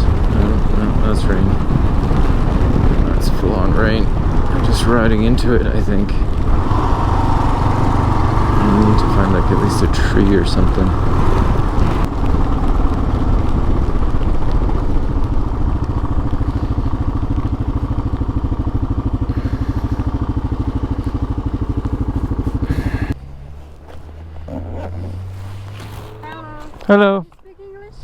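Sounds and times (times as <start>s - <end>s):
wind noise: 0.0s - 23.2s
motorcycle engine running: 0.0s - 27.0s.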